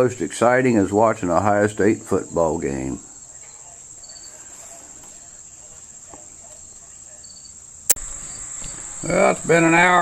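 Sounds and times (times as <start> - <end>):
crickets trilling: 1.0 - 10.0.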